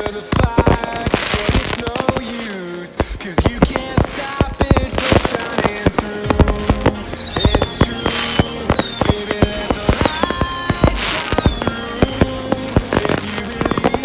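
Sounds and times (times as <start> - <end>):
electronic music: 0.0 - 14.0
fireworks bangs and crackles: 0.0 - 14.0.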